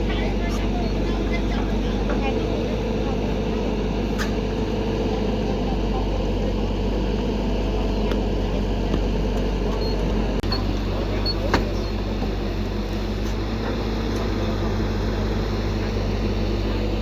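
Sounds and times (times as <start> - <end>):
excavator engine running: 0.0 - 17.0.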